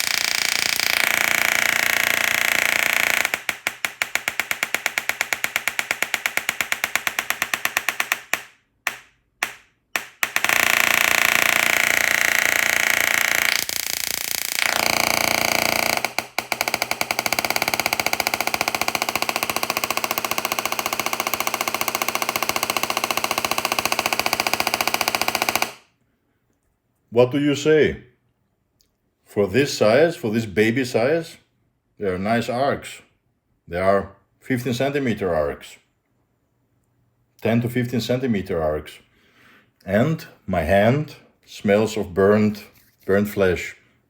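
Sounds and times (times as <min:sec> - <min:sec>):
tesla coil arcs buzzing: 0:00.0 - 0:08.3, 0:10.2 - 0:21.8.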